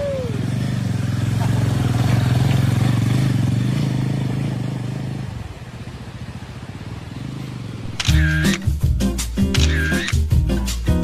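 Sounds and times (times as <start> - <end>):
motorcycle engine running: 0.0 - 9.0.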